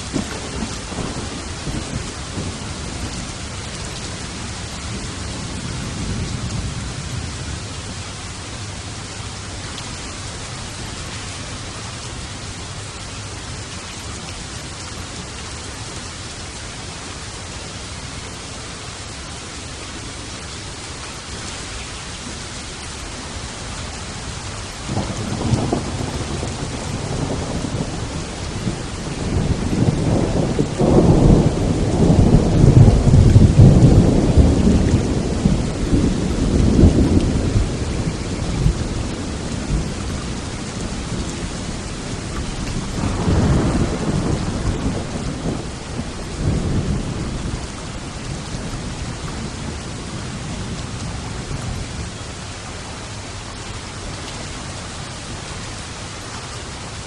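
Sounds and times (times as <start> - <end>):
thunder rumbling: 0.0 - 9.4, 23.3 - 52.5
rain hiss: 0.0 - 57.0.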